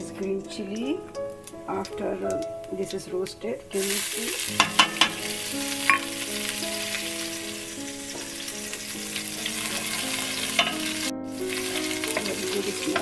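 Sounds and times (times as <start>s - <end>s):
oil popping: 0.0s - 13.0s
spices sizzling in hot oil: 0.0s - 13.0s.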